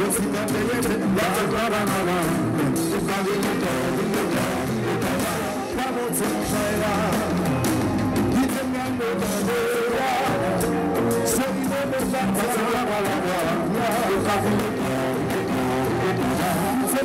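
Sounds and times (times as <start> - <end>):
electric guitar: 0.0 - 17.0
live band playing: 0.0 - 17.0
person singing: 0.0 - 17.0.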